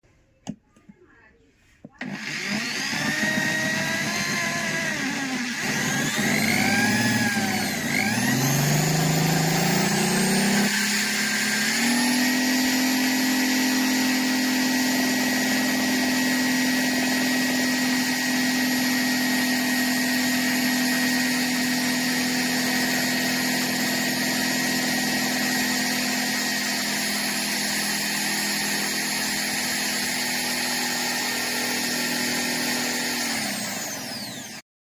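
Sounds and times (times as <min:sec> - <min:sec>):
electric hammer drill motor: 0:01.9 - 0:34.6.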